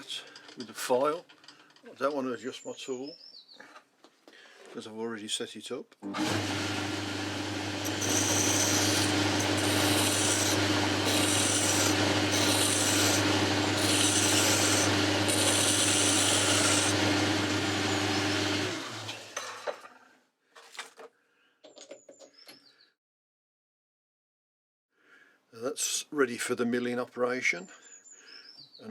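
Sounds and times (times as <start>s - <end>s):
lathe motor hum: 6.1s - 19.3s
file scraping metal: 7.8s - 18.6s.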